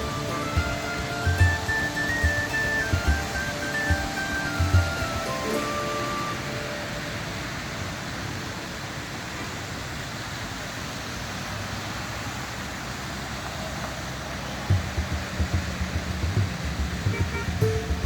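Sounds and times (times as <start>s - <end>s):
background music: 0.0s - 8.2s, 14.7s - 18.0s
road traffic noise: 0.0s - 18.0s.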